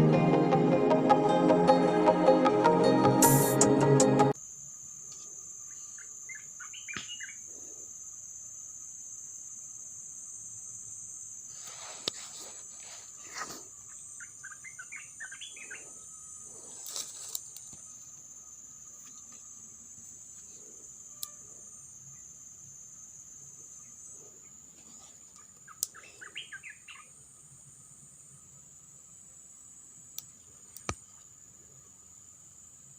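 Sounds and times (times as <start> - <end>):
insects droning high-pitched: 0.0 - 32.9
quick chirping calls: 5.9 - 7.5, 13.9 - 15.8.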